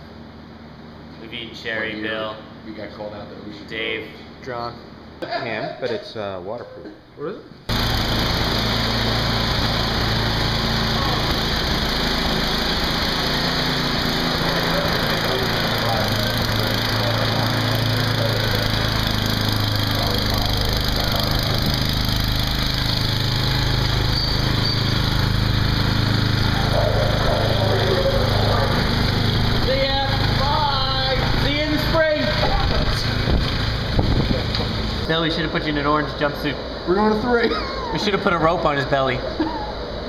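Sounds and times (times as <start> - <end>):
engine droning: 7.7 - 36.8
loud rushing noise: 21.2 - 35.0.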